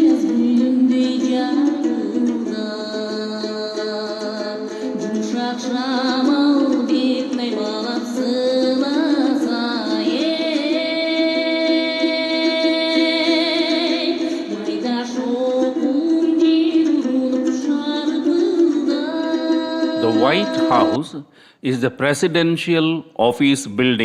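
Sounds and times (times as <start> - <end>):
person singing: 0.0 - 21.3
background music: 18.4 - 21.3.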